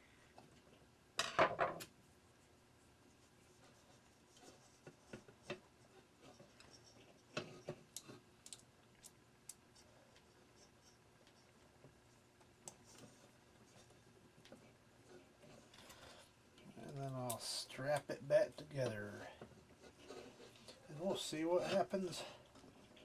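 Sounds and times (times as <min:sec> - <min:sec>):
faint clicks and taps: 0:03.6 - 0:18.1.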